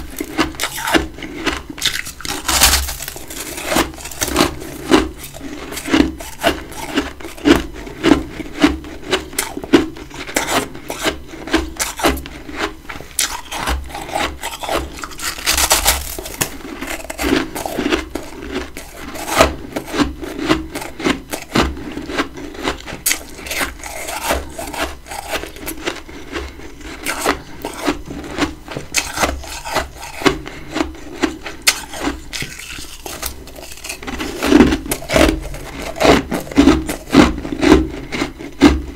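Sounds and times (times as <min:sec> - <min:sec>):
chewing crunchy frost: 0:00.0 - 0:38.9.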